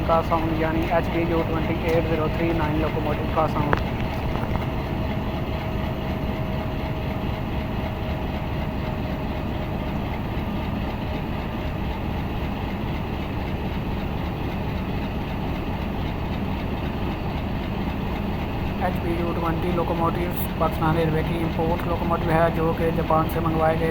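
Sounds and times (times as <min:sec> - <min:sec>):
faint steady whine: 0:00.0 - 0:07.0, 0:17.8 - 0:23.9
diesel locomotive idling: 0:00.0 - 0:23.9.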